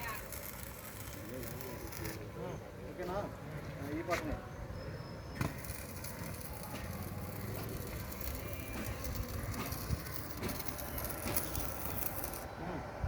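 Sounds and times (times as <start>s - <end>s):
sharp welding pops: 0.0s - 2.2s, 5.4s - 12.5s
welding arc crackling hiss: 0.0s - 2.3s, 5.4s - 12.5s.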